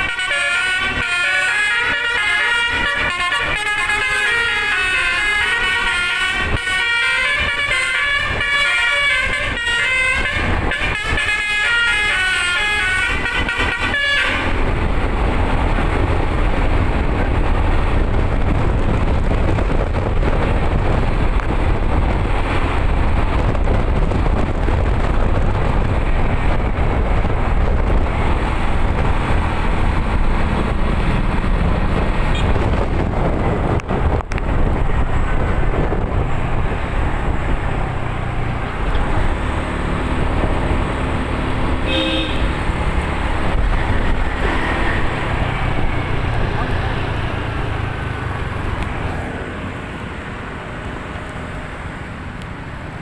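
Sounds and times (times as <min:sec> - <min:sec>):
car horn toot: 0:00.0 - 0:14.6, 0:41.8 - 0:42.7
vehicle road noise rumble: 0:00.0 - 0:53.0.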